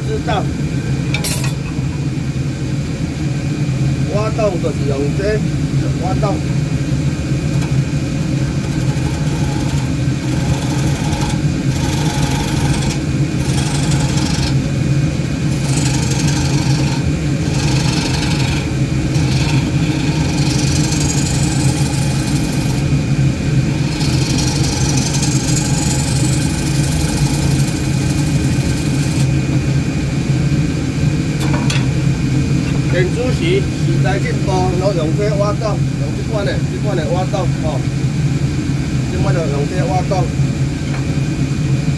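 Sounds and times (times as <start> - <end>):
lathe motor hum: 4.1 - 37.8
tool cutting spinning wood: 6.2 - 29.8.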